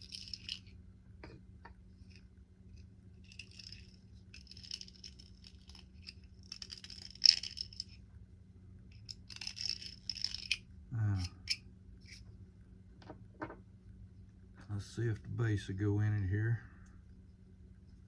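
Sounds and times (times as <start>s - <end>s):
plastic parts clicking and scraping: 0.0s - 0.6s, 3.3s - 8.0s, 9.0s - 10.6s
faint steady hum: 0.0s - 18.0s.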